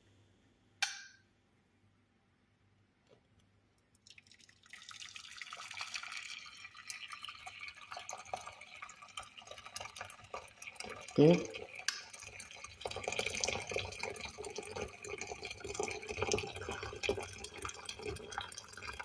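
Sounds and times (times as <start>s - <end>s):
water pouring into a saucepan: 4.0s - 19.0s.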